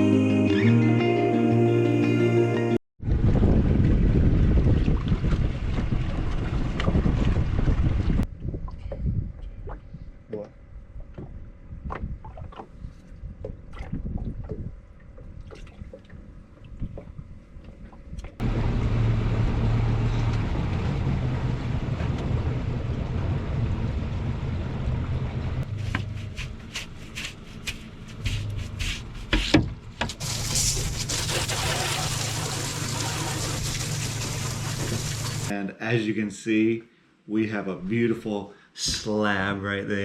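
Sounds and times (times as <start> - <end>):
water running and splashing: 25.6 - 29.4, 30.2 - 35.5.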